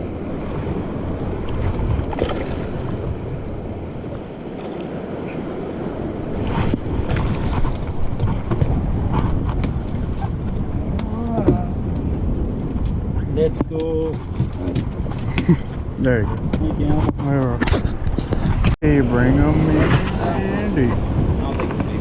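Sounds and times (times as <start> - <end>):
surf washing: 0.0 - 22.0
wind blowing across microphone: 0.0 - 22.0.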